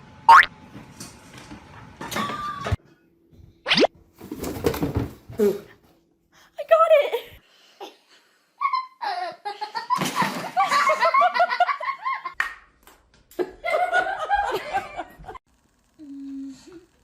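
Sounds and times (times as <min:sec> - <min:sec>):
hearty laughter: 0:08.6 - 0:12.4, 0:13.4 - 0:15.4.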